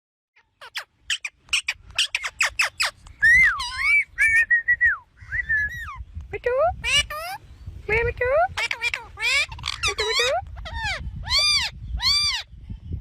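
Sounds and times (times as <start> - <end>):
parakeet chirping and whistling: 0.6 - 6.0, 8.6 - 12.4.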